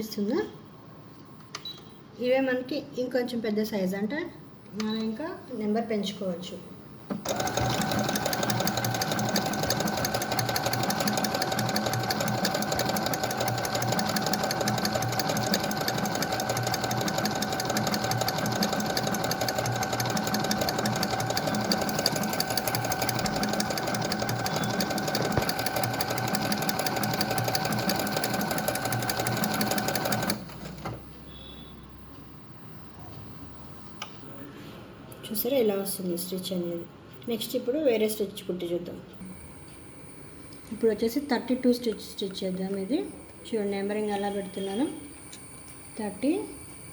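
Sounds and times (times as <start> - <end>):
sewing machine running: 7.2 - 31.0.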